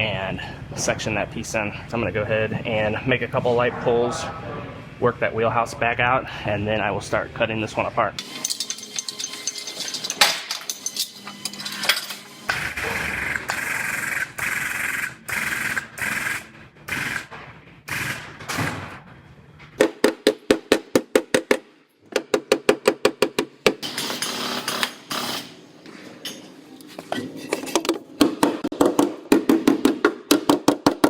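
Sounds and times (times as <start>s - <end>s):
metal clanks and knocks: 8.2s - 12.2s.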